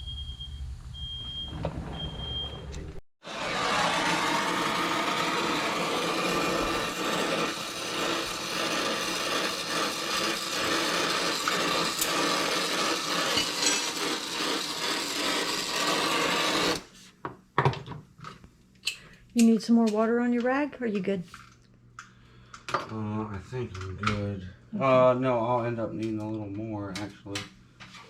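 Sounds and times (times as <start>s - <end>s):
hand saw cutting: 3.2s - 16.9s.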